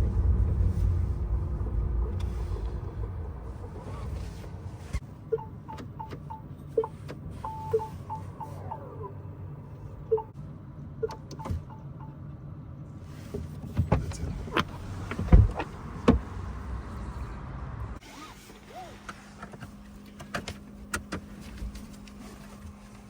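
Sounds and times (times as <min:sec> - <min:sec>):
low rumble: 0:00.0 - 0:05.0
sharp clicks and knocks in a car: 0:04.8 - 0:08.0, 0:11.0 - 0:11.9, 0:13.3 - 0:16.4, 0:19.0 - 0:23.0.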